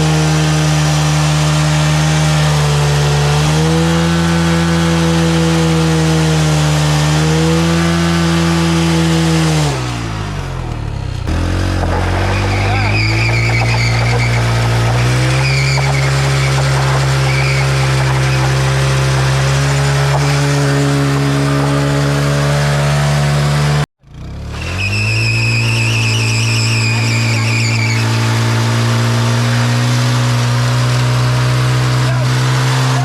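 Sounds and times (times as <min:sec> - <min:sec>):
motorcycle engine revving: 0:00.0 - 0:33.0
tyre squealing on road: 0:11.3 - 0:23.6, 0:24.4 - 0:33.0.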